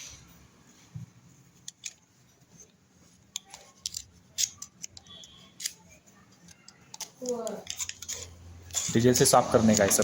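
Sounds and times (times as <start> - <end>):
small metal parts clicking: 3.3 - 9.3
metal parts scraping: 7.6 - 10.0.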